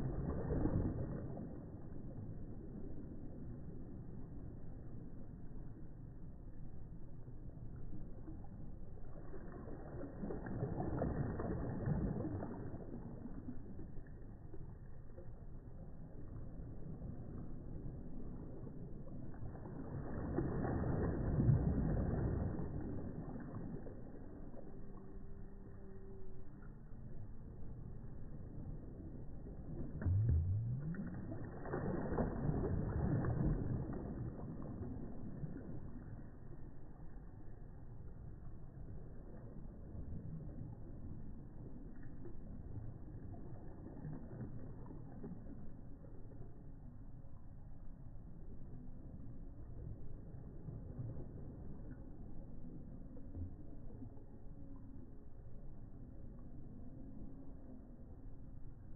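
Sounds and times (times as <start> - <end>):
small wave breaking: 0.0 - 4.0, 8.2 - 26.7, 27.4 - 36.8
low rising sound: 0.0 - 58.9
low rumble of surf: 0.0 - 58.9.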